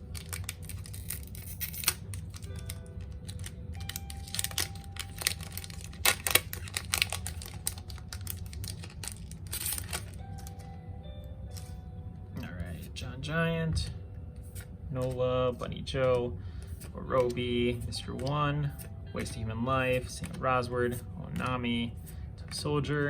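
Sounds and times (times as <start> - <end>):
foil wrapper tearing and crinkling: 0.0 - 10.2
soft background music: 0.0 - 23.0.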